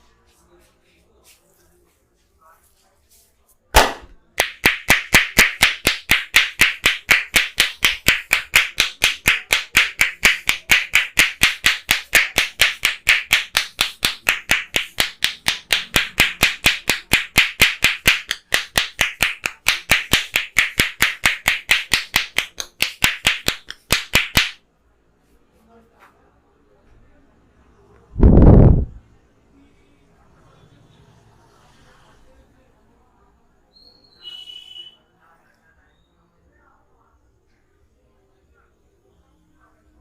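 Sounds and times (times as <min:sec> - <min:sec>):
sharp hand claps on head: 0:03.8 - 0:24.6.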